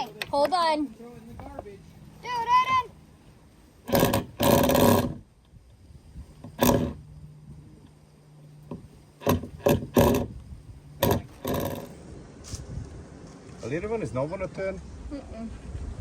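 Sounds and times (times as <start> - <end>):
power drill bursts: 3.9 - 5.2, 6.4 - 7.0, 11.0 - 11.9.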